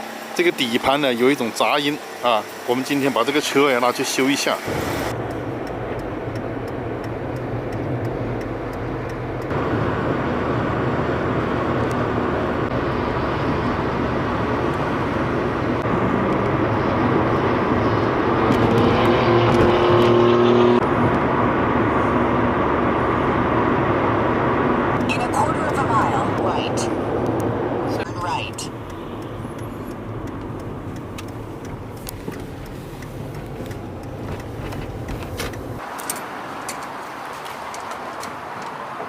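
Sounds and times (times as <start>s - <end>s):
road noise: 0.0s - 39.0s
car engine running: 5.0s - 35.8s.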